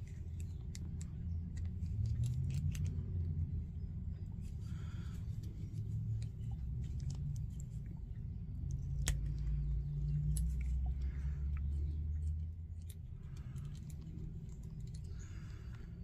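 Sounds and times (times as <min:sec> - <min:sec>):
small metal parts clicking: 0:00.0 - 0:03.4, 0:08.6 - 0:16.0
low steady hum: 0:00.0 - 0:16.0.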